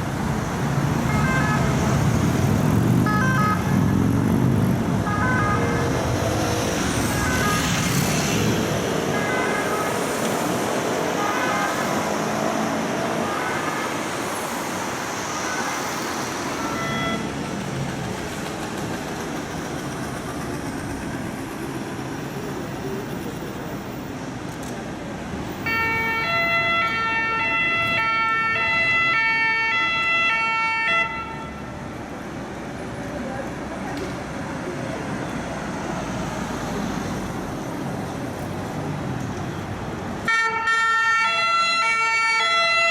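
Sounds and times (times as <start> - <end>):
street traffic: 0.0 - 42.9
ambulance siren: 1.0 - 4.2, 4.8 - 17.5, 25.6 - 31.8, 40.2 - 42.9.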